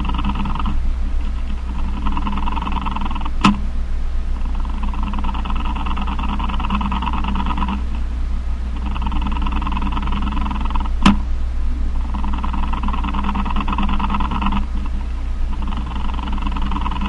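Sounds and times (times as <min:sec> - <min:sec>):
spider buzz of rapid pulses: 0:00.0 - 0:03.6, 0:04.4 - 0:08.0, 0:08.7 - 0:11.1, 0:12.0 - 0:17.0
steady low hum: 0:00.0 - 0:17.0
sharp click: 0:00.2 - 0:03.7, 0:10.9 - 0:11.3.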